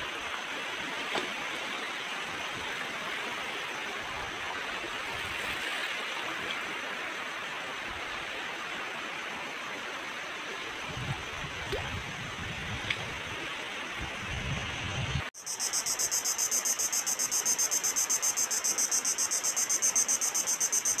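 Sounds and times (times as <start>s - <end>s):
crickets chirring: 15.4s - 21.0s.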